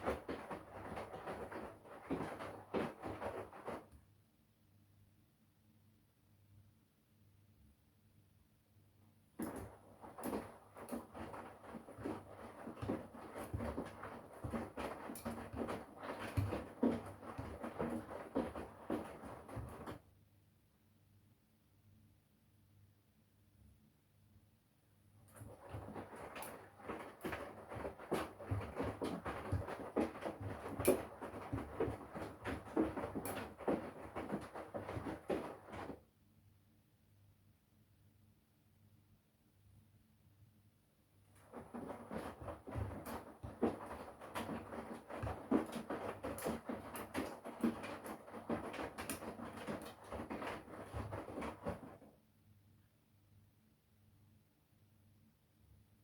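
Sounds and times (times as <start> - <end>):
water sloshing in washing machine: 0.0 - 3.9, 9.4 - 20.0, 25.3 - 36.0, 41.4 - 52.1
soft thumps of tumbling laundry: 0.0 - 4.0, 9.4 - 20.0, 25.3 - 36.0, 41.4 - 52.1
clothes thudding in drum: 9.4 - 20.0, 25.4 - 36.0, 41.4 - 52.0.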